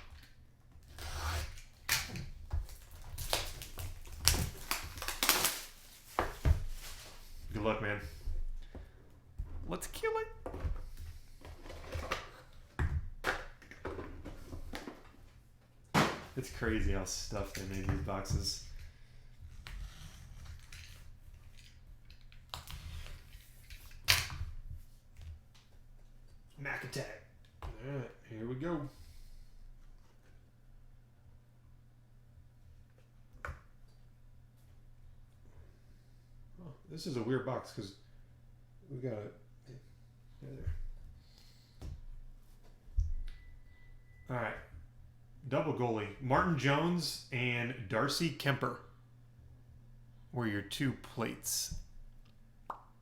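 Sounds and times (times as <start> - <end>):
card box and packaging handled: 2.6 - 7.4.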